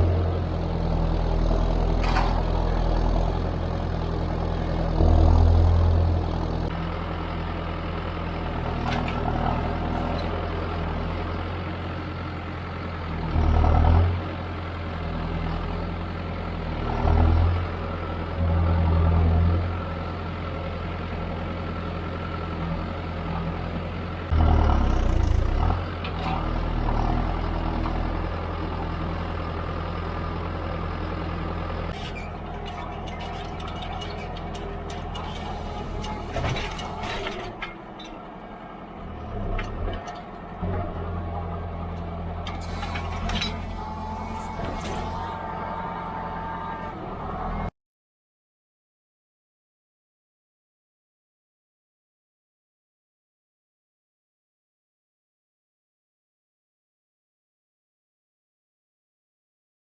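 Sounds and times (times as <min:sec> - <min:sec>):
tractor diesel engine running: 0:00.0 - 0:47.7.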